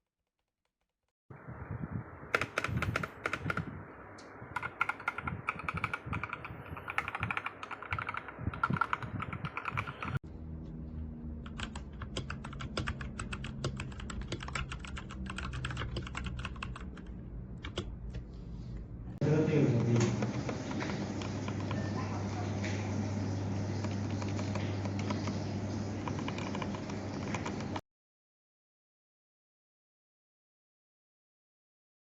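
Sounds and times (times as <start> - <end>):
steady low hum: 1.3 - 27.8
mechanical keyboard key clacks: 2.3 - 3.7, 4.6 - 10.2, 11.5 - 17.9.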